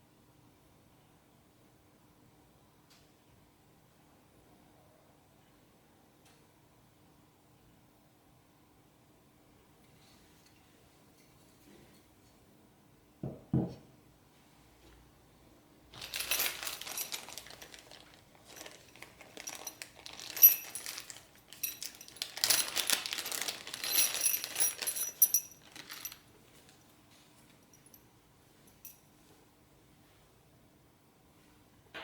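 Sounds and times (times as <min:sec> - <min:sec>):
small metal pieces clinking: 0:16.0 - 0:26.2.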